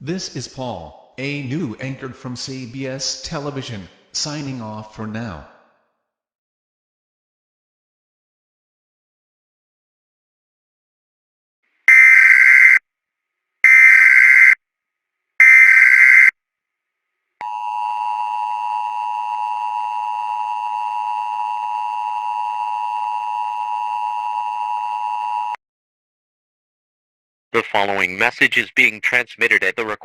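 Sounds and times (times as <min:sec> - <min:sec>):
harsh data tone bursts: 0:11.9 - 0:12.8, 0:13.7 - 0:14.6, 0:15.4 - 0:16.3.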